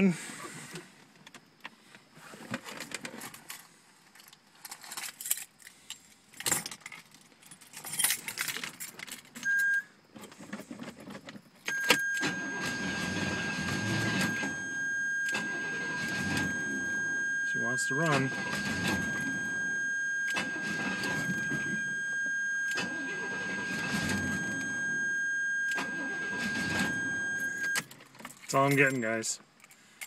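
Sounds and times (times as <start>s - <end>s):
keys jangling: 4.2s - 9.4s
car engine starter cranking: 11.6s - 28.9s
short electronic chime: 11.7s - 27.8s
steady warning tone: 11.7s - 27.8s.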